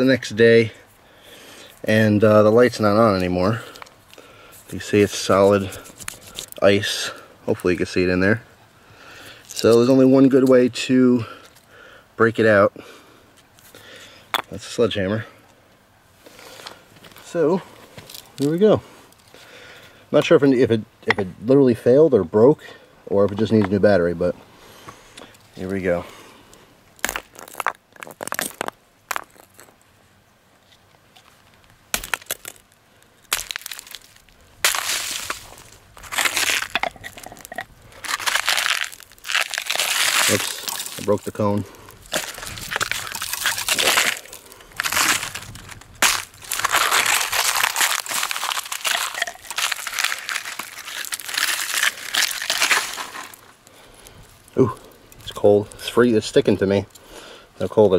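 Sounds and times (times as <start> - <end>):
ice crunching and cracking: 1.3 - 8.1, 9.2 - 10.6, 16.2 - 19.5, 27.0 - 29.8, 31.9 - 57.1
sledgehammer striking ice: 31.9 - 32.6, 33.3 - 35.4, 46.0 - 53.4.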